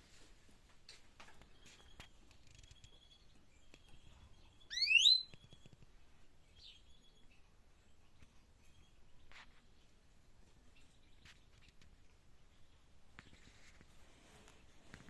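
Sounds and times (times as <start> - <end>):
faint bird chirps: 1.4 - 10.0
songbird rising call: 4.7 - 5.3.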